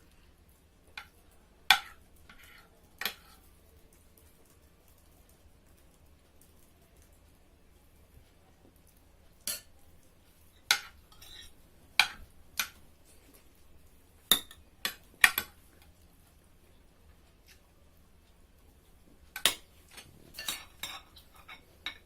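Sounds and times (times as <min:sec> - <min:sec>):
utensils clinking on plates: 0:10.6 - 0:12.8, 0:19.4 - 0:22.0.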